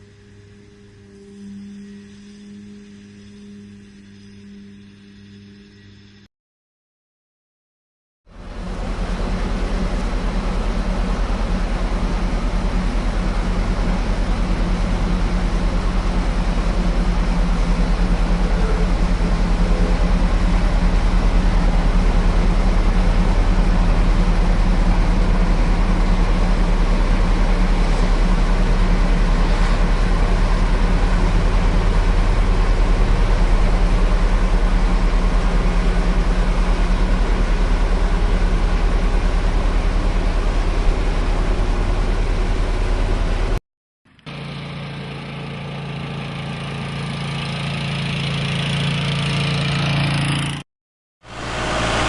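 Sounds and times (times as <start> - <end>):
quieter engine sound: 8.3 - 43.6, 51.3 - 52.0
tractor engine running: 8.6 - 50.6.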